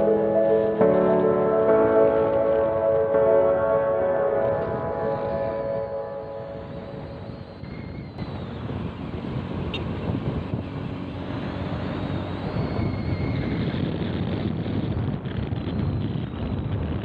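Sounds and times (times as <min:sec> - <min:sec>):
wind buffeting microphone: 0:00.0 - 0:17.0
small motorcycle engine: 0:06.6 - 0:14.9.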